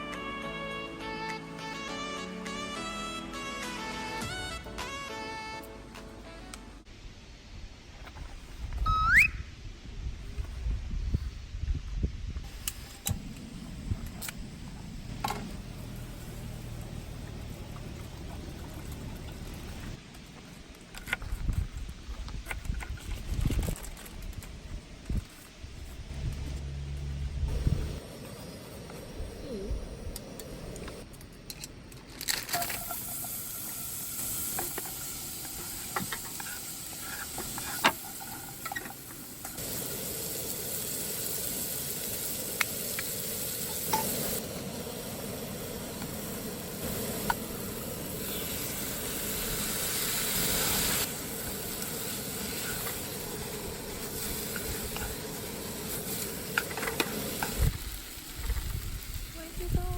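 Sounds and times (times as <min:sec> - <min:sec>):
food sizzling in a frying pan: 0:32.6 - 0:59.9.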